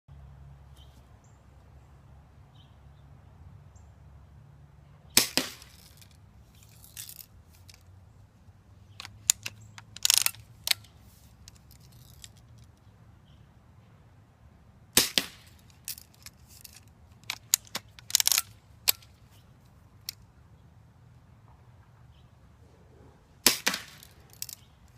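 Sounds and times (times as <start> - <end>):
bb gun shots cracking: 5.2 - 6.1, 15.0 - 15.7, 23.4 - 24.7.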